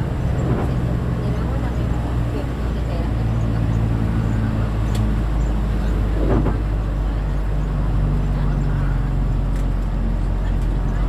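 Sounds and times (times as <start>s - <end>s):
road rumble: 0.0s - 11.0s
vehicle engine drone: 0.0s - 11.0s.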